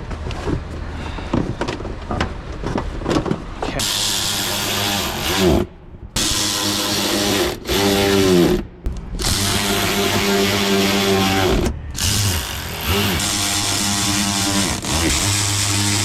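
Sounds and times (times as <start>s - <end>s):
cordless drill motor whine: 9.2s - 16.0s.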